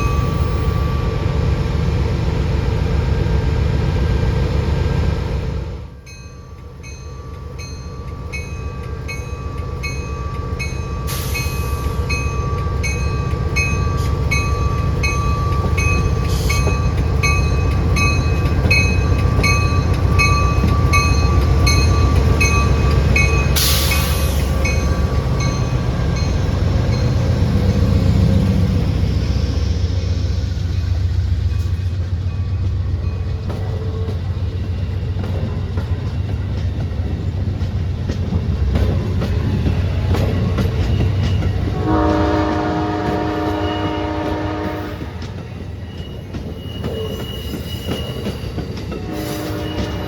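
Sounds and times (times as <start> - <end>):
crossing bell ringing: 0.0 - 1.4, 6.0 - 28.7, 31.4 - 34.1
train rumbling past: 0.0 - 50.0.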